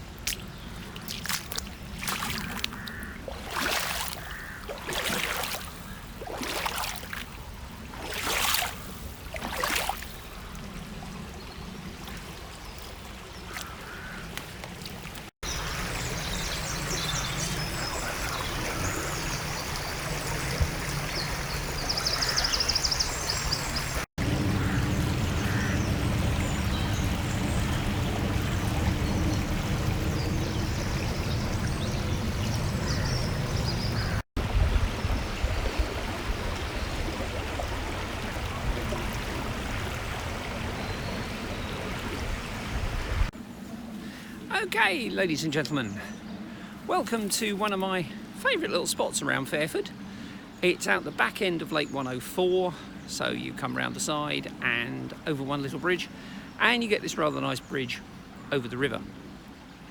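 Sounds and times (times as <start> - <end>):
water sloshing: 0.0 - 43.4
river running: 0.0 - 59.9
birds chirping and trilling: 0.3 - 7.3, 15.4 - 34.2, 43.5 - 59.8.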